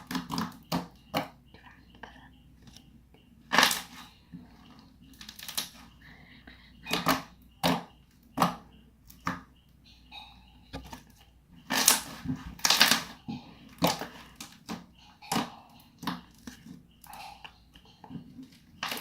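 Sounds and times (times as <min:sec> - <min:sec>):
slime crackling: 0:11.6 - 0:17.2
slime clicking and popping: 0:11.7 - 0:13.2.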